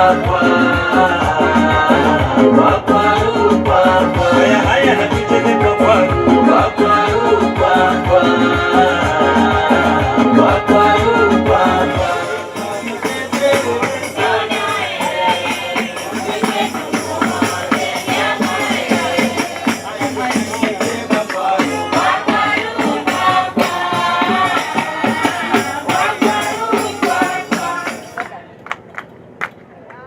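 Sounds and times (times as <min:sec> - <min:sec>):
shaken and struck percussion: 0:11.6 - 0:28.4.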